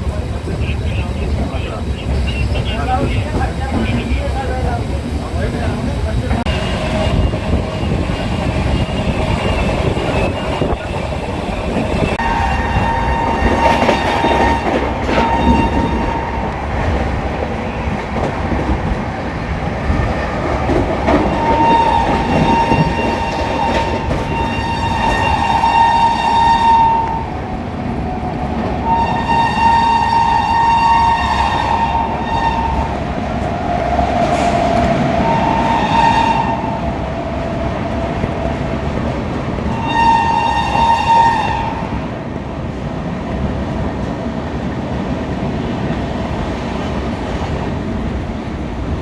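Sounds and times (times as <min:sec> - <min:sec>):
train running on rails: 0:00.0 - 0:49.0
locomotive horn blasts: 0:21.5 - 0:27.2, 0:28.9 - 0:32.8, 0:39.7 - 0:41.8.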